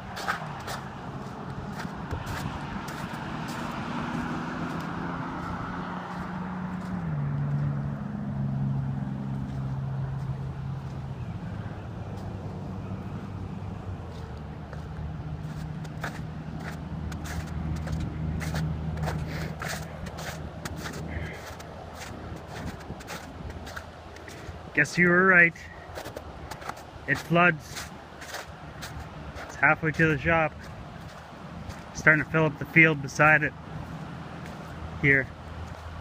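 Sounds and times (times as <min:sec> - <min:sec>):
vehicle engine running: 0:00.0 - 0:24.5.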